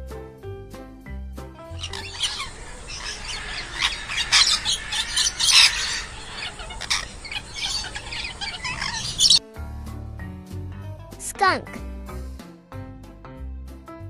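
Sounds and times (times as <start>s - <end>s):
macaw squawking: 1.7s - 9.4s.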